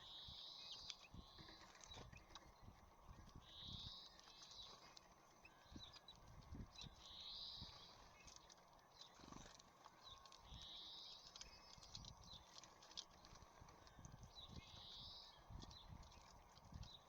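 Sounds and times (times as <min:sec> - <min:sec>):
birds pecking and landing: 0:07.9 - 0:14.7.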